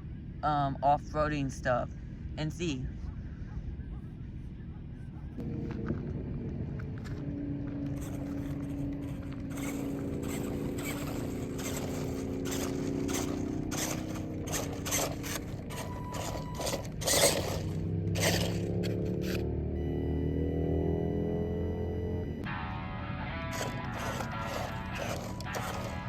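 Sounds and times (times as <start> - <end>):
vehicle engine running: 0.0 - 26.0
rocks crunching and scraping: 5.4 - 19.4, 23.4 - 26.0.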